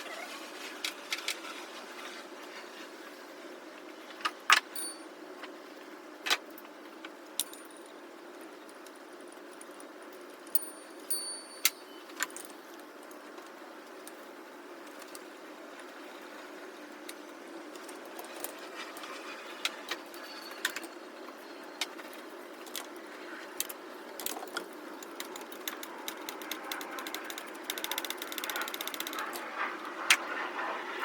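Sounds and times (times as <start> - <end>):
metal tools clinking: 4.5 - 5.1, 10.5 - 12.6.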